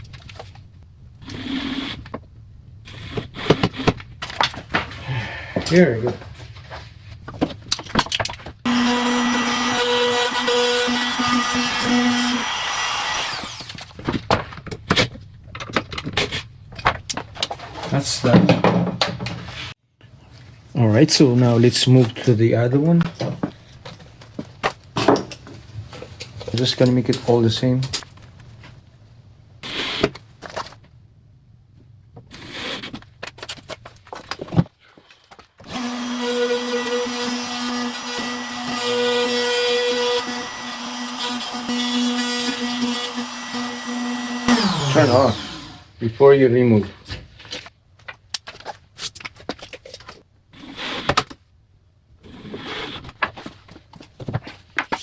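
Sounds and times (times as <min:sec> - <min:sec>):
router winding down whine: 0:08.7 - 0:13.8, 0:35.7 - 0:45.9
wood router cutting wood: 0:08.7 - 0:13.8, 0:35.6 - 0:46.0
sharp knocks and clatters: 0:13.9 - 0:19.6.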